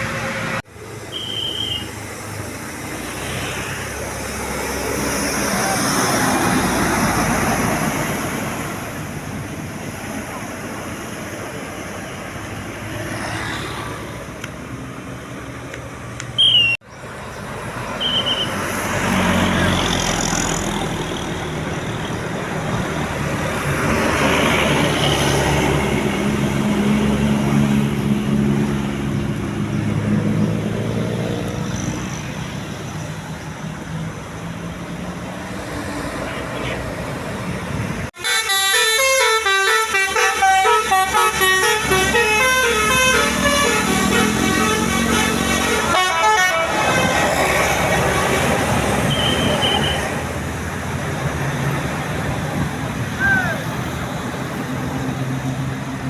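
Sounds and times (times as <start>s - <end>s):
bus engine passing: 0.0s - 56.0s
multi-note horn tune: 38.2s - 47.4s.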